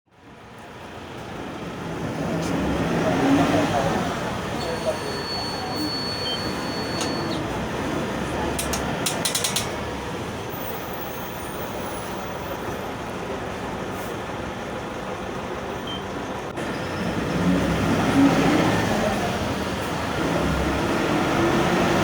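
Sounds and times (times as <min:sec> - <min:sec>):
diesel bus engine running: 0:00.1 - 0:22.0
rattling clicks: 0:08.5 - 0:09.8.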